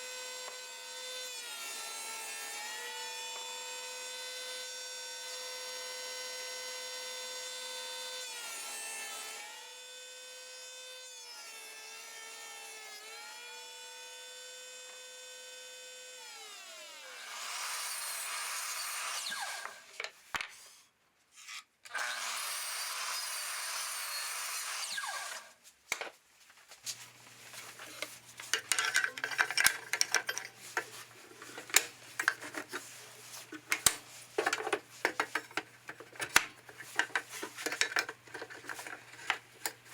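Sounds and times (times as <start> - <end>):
table saw cutting wood: 0.1 - 19.9, 21.9 - 25.6, 27.8 - 39.9
wood and tools clattering: 27.6 - 39.9.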